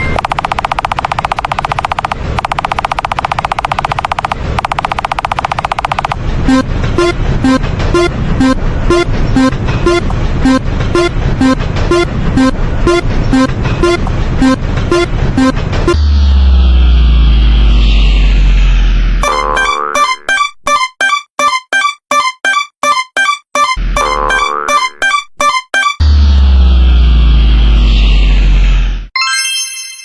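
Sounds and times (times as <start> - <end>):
low rumble: 6.2 - 19.2, 26.0 - 29.1.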